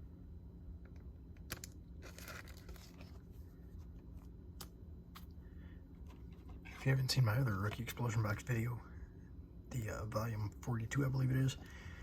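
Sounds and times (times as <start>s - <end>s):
plastic sleeve crinkling: 1.5s - 3.3s.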